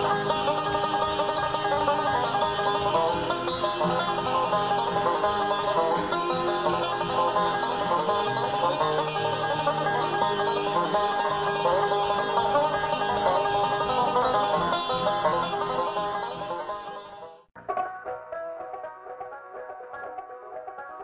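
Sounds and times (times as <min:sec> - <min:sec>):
fast plucked banjo music: 0:00.0 - 0:21.0.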